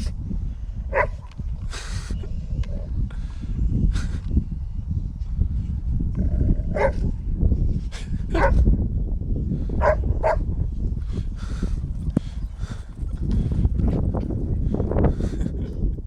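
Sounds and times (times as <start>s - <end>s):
low rumble: 0.0s - 16.0s
dog barking: 0.9s - 1.3s, 6.7s - 7.0s, 8.3s - 8.7s, 9.8s - 10.5s.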